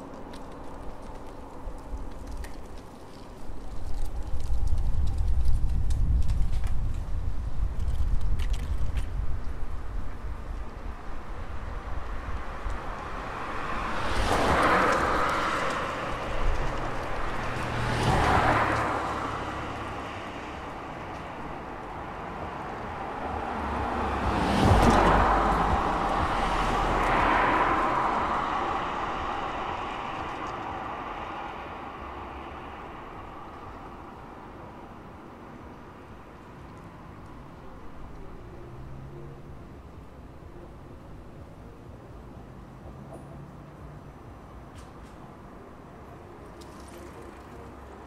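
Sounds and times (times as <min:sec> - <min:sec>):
cars driving past: 0:10.3 - 0:48.0.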